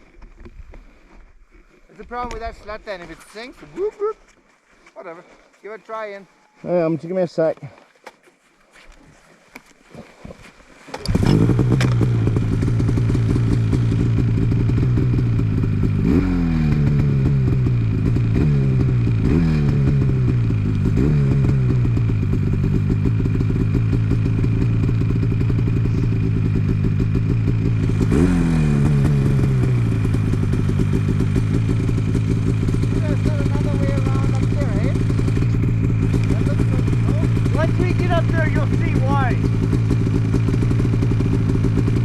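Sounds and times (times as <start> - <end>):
snowmobile engine revving hard: 11.0 - 42.0.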